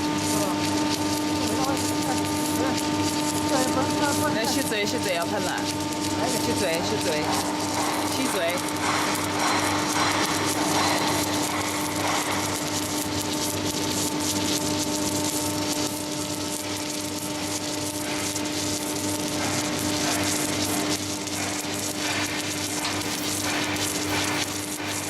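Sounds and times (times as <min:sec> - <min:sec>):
steady electrical hum: 0:00.0 - 0:25.0
welding arc crackling hiss: 0:00.0 - 0:25.0.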